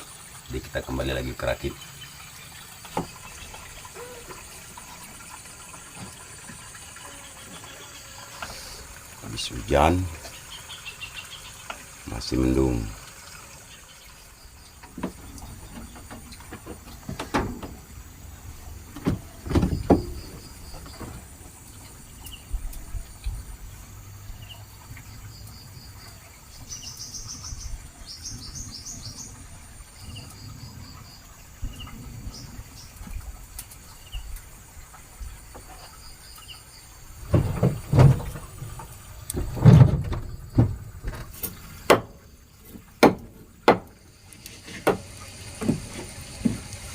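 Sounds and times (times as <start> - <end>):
birds chirping and trilling: 0.5 - 43.1
loud knocks and thumps: 14.9 - 17.9, 18.9 - 21.3, 37.2 - 42.2, 43.0 - 44.0.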